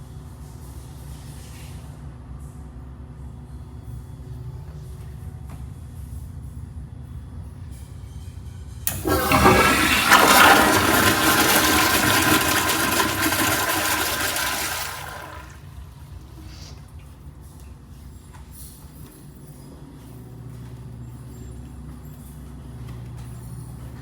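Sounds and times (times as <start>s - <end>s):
toilet flushing water rushing: 8.9s - 16.3s.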